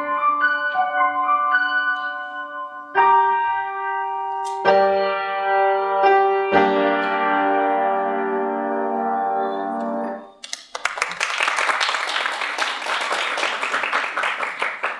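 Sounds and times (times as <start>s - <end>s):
piano chords: 0.0s - 10.4s.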